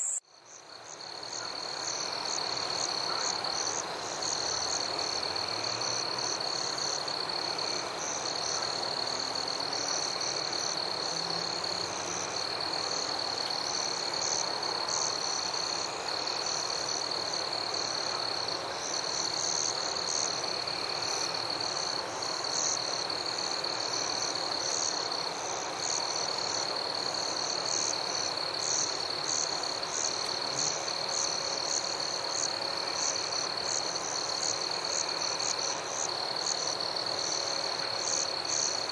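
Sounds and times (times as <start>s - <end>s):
frogs calling: 0.0s - 0.2s
high insect trill: 0.0s - 38.9s
rapid pulsing insect calls: 0.0s - 38.9s.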